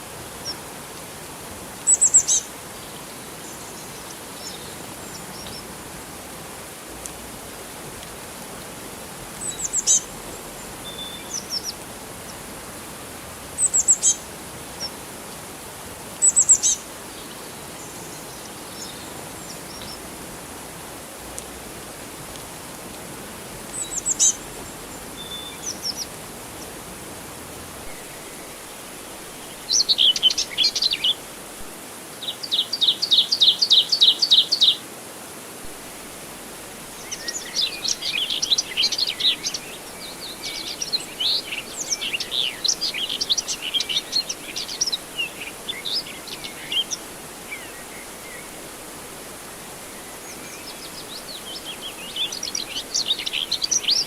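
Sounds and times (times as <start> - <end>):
background hiss: 0.0 - 54.0
birds chirping and calling: 23.7 - 26.7, 27.8 - 31.2, 37.1 - 48.6.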